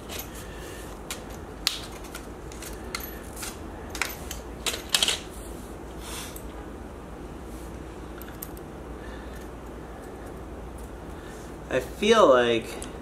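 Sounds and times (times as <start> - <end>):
metal tools clinking: 1.1 - 5.2.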